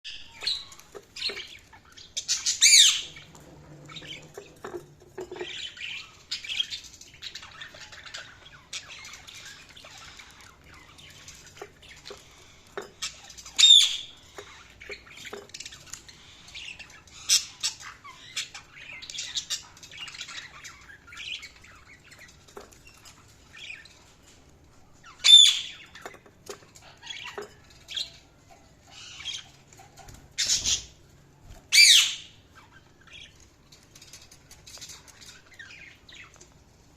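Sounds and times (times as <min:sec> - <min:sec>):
budgerigars chattering: 0:00.1 - 0:03.3.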